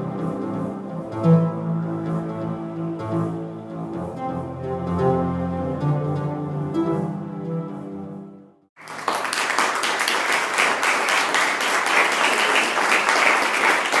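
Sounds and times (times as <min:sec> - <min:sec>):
electronic music with sustained tones: 0:00.0 - 0:08.6
audience applauding: 0:08.8 - 0:14.0.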